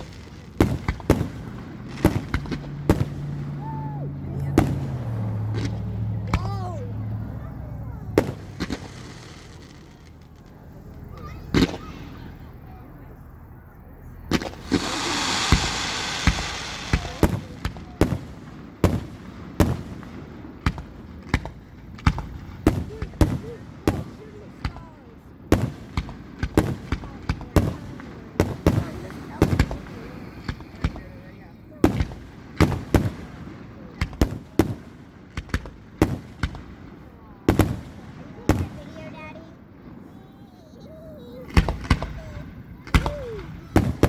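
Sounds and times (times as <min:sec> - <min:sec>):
fireworks bangs: 0:00.0 - 0:13.4, 0:14.1 - 0:44.0
fireworks hissing crackle: 0:00.0 - 0:13.4, 0:14.2 - 0:44.0.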